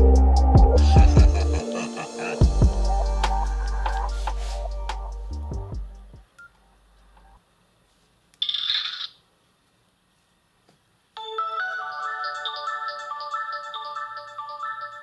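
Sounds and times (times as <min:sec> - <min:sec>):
phone ringtone melody: 0:11.2 - 0:15.0
polyphonic ringtone: 0:11.2 - 0:15.0.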